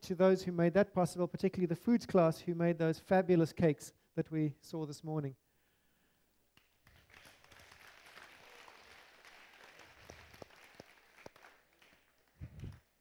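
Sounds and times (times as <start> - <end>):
audience applause: 6.8 - 13.0.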